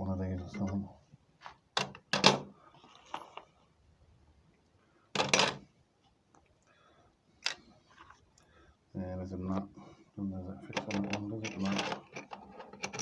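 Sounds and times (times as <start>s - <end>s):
metal parts clanking: 10.7s - 13.0s
metal parts clattering: 10.7s - 13.0s.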